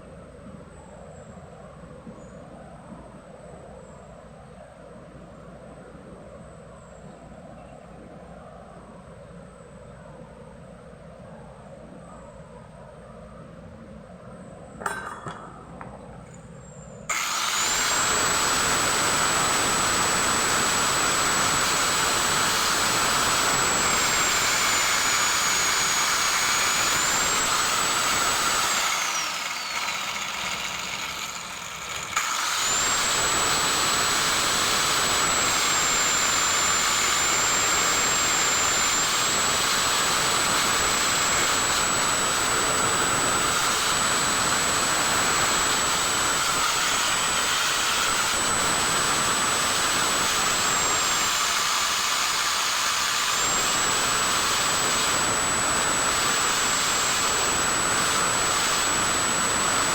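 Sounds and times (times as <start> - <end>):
high-speed power tool whining: 17.1 - 59.9.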